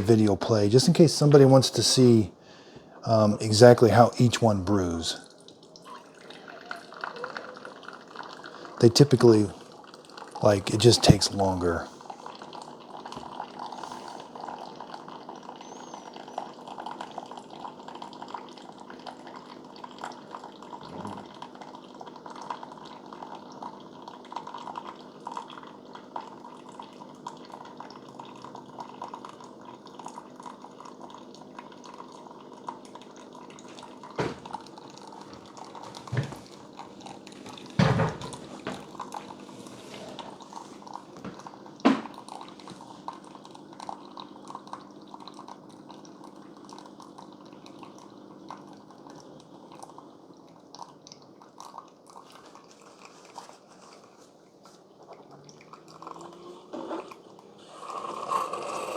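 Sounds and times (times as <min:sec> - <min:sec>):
coffee trickling into cup: 0:00.0 - 0:58.9
coffee maker thumps: 0:34.2 - 0:34.6, 0:37.5 - 0:39.2, 0:41.3 - 0:42.2.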